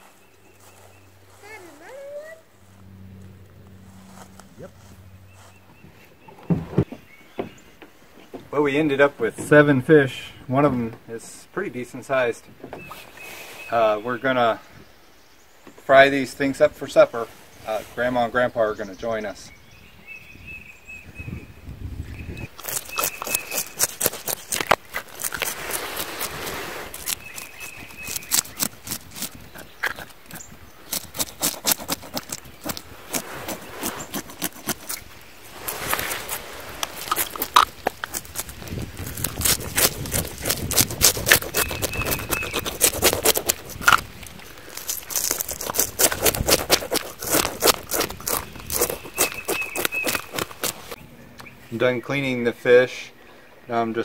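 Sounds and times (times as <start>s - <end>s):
knife scraping fish: 22.6s - 30.1s, 30.9s - 51.0s.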